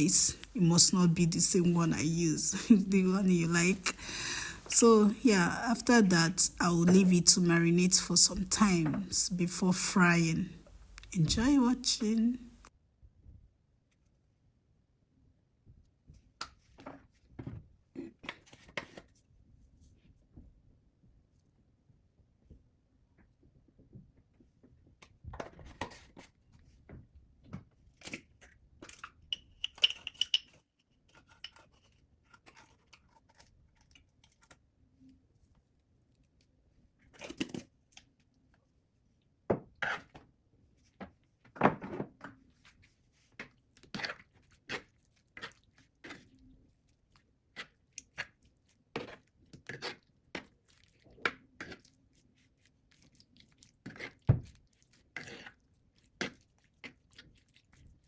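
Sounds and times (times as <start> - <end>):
kitchenware clicks and knocks: 29.6 - 30.5.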